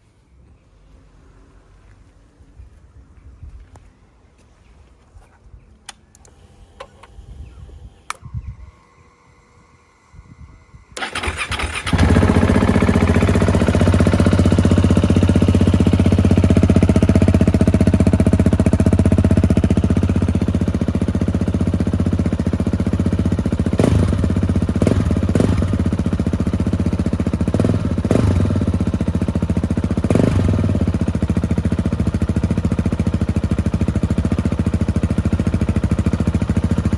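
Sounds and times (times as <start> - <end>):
engine revving blips: 6.2 - 16.4
motorcycle engine idling: 7.1 - 36.9.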